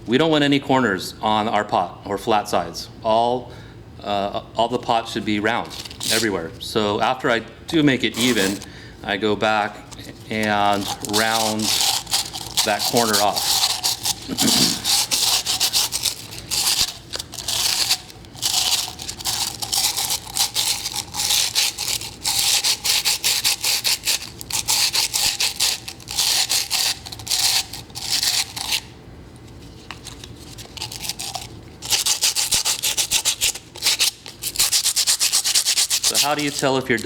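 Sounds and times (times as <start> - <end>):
sandpaper rubbing on clay pot: 5.6 - 6.5, 8.0 - 8.7, 10.0 - 28.9, 29.5 - 37.0.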